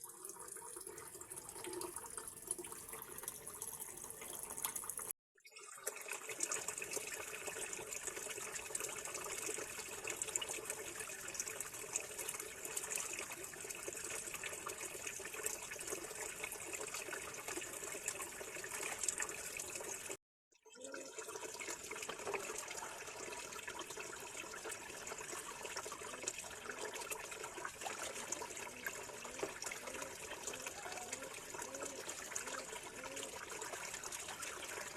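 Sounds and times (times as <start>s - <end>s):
tap water running into sink: 0.0s - 5.1s.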